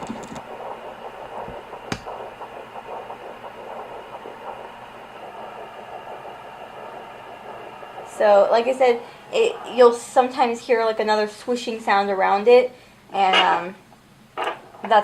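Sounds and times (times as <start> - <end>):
fetal heartbeat whoosh: 0.0 - 11.8.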